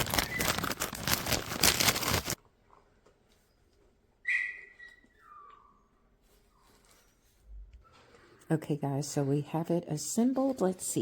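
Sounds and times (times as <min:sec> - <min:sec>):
plastic packaging crinkling: 0:00.0 - 0:02.4
descending whistle-like tone: 0:04.2 - 0:05.6.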